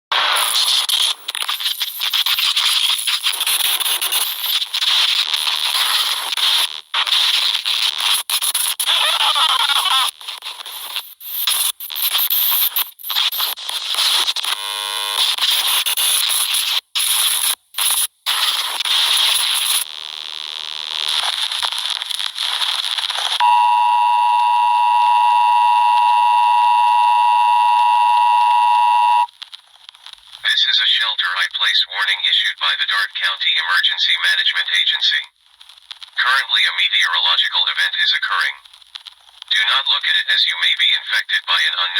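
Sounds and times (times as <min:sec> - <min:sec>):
harsh crackling static: 0:00.1 - 0:41.9
two-tone attention signal: 0:23.4 - 0:29.3.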